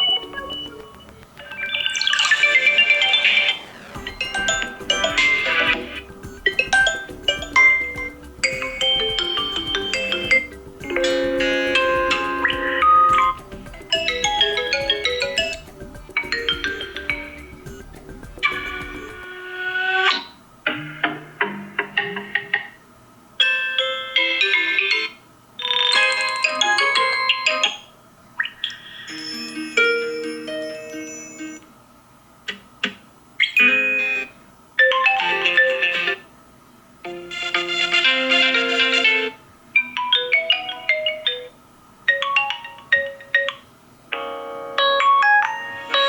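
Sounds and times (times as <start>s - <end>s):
phone ringtone melodies: 0.0s - 19.3s, 25.6s - 27.9s, 28.8s - 31.6s, 37.1s - 41.5s, 42.1s - 46.0s.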